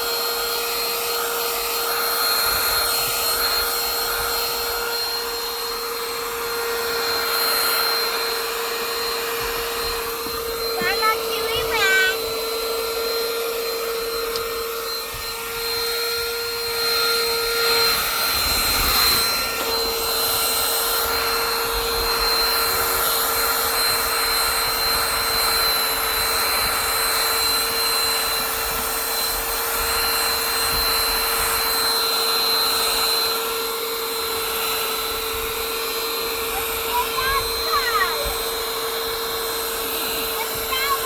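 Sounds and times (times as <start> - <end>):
car vacuum running: 0.0 - 41.0.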